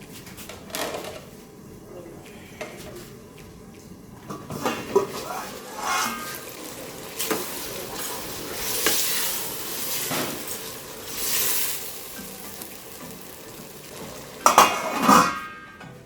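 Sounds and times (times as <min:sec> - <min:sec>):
stew sizzling in a pot: 0:04.2 - 0:15.8
metal clattering on a pot: 0:05.8 - 0:06.6, 0:14.0 - 0:15.9.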